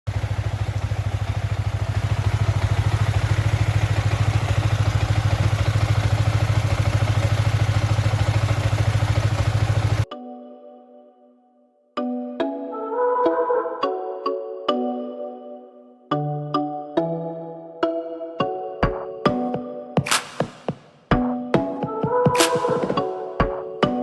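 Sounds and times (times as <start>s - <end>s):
motorcycle engine idling: 0.1s - 10.1s.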